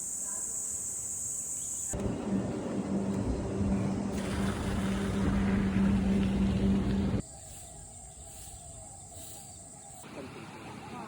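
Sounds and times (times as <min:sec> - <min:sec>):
high insect buzz: 0:00.0 - 0:02.0
motor hum: 0:02.0 - 0:07.2.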